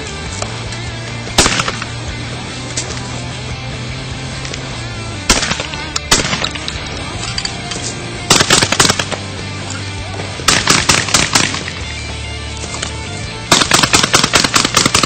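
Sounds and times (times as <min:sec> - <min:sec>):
background music: 0:00.0 - 0:15.0
shotgun shots: 0:01.4 - 0:02.1, 0:05.3 - 0:06.9, 0:08.2 - 0:09.4, 0:10.4 - 0:12.0, 0:13.5 - 0:15.0.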